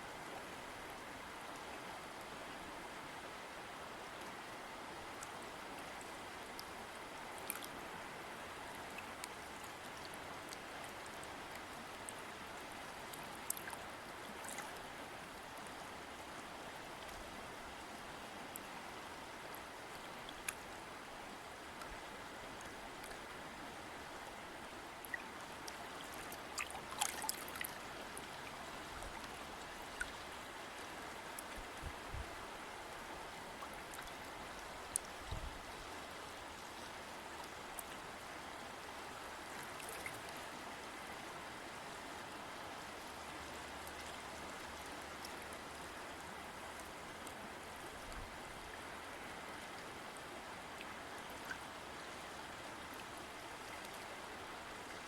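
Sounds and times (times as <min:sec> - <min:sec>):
river water flowing: 0:00.0 - 0:55.0
small splashes and drips: 0:07.4 - 0:07.7, 0:13.1 - 0:14.8, 0:25.0 - 0:29.3, 0:39.5 - 0:40.4.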